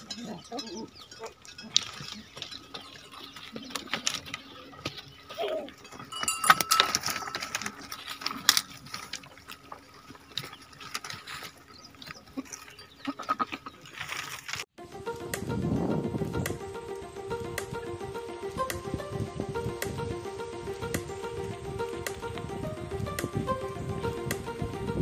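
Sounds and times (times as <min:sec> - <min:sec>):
knocks and clinks: 0:00.0 - 0:09.8.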